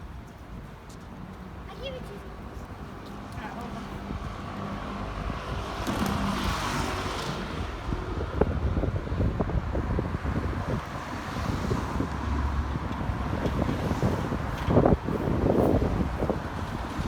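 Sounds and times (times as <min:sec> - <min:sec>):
wind buffeting microphone: 0:03.7 - 0:17.0.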